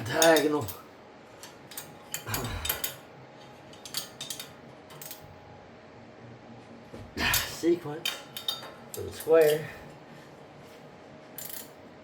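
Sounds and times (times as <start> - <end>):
wrench clinking on metal bolts: 0.1 - 0.8, 3.7 - 5.3, 7.3 - 9.7, 11.4 - 11.8.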